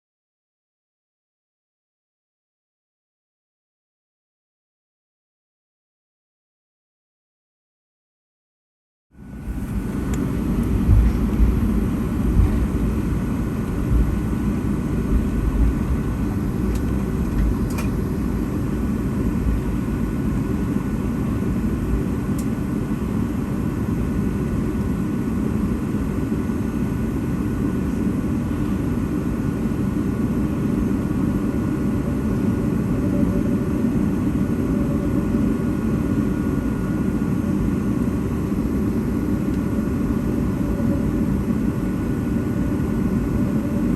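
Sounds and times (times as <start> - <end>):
aircraft engine and airflow noise: 9.1 - 43.9
low rumble and bumps: 9.4 - 20.2.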